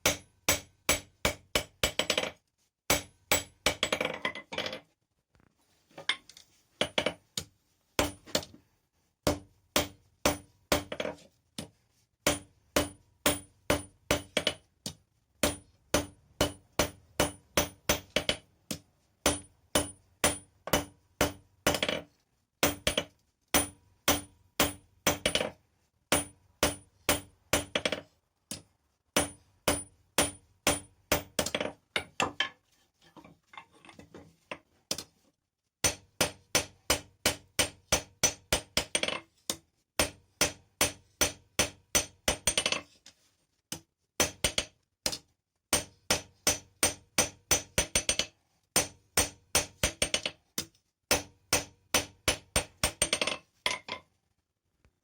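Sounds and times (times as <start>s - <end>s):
hammer striking steel on anvil: 0.0s - 2.2s, 2.9s - 3.9s, 15.4s - 18.4s, 22.6s - 25.5s, 45.8s - 50.3s, 51.1s - 53.4s.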